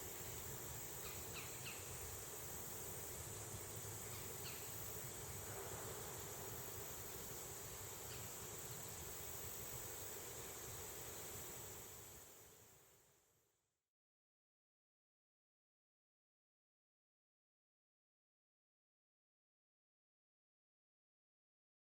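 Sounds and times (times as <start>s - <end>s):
insects trilling: 0.0s - 12.8s.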